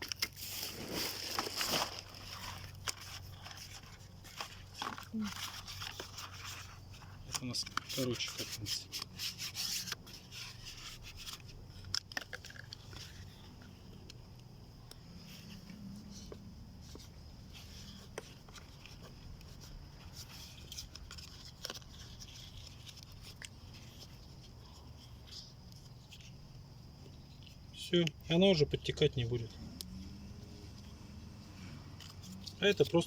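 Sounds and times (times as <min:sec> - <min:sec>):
low steady background: 0:00.0 - 0:33.0.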